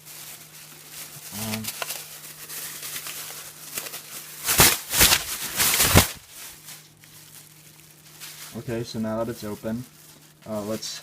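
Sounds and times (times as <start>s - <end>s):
paper tearing: 0.0s - 6.7s
paper mailer rustling: 0.0s - 11.0s.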